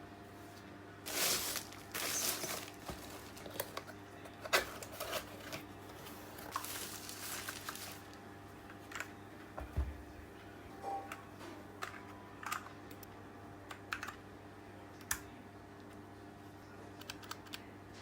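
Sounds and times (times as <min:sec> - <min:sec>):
packaging rustling and crinkling: 0:01.1 - 0:08.2.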